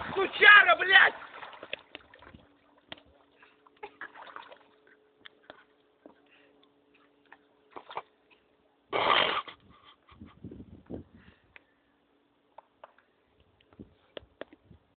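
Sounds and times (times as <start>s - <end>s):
water sloshing: 0.0s - 6.0s
faint steady hum: 0.0s - 14.9s.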